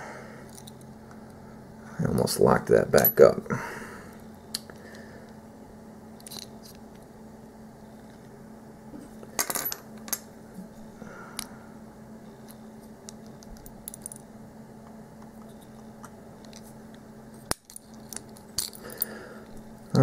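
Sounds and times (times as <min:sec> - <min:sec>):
metal lock parts clinking: 0:06.2 - 0:06.8, 0:12.4 - 0:14.3, 0:17.4 - 0:19.0.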